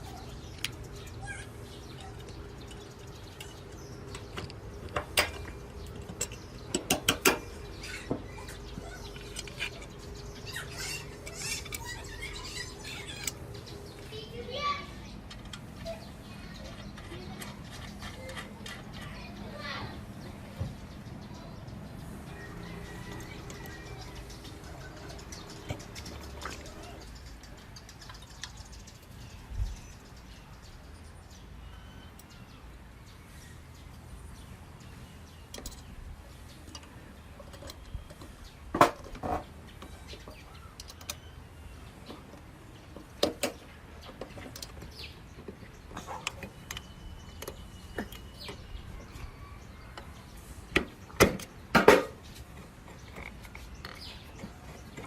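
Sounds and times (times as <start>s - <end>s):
clicks and clinks of objects handled: 0.0s - 14.1s, 15.1s - 19.2s, 22.9s - 29.2s, 35.4s - 41.3s, 41.9s - 49.3s, 49.9s - 55.0s.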